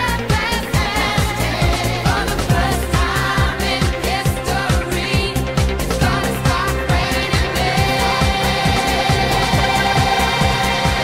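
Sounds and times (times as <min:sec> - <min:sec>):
upbeat dance-pop music: 0:00.0 - 0:11.0.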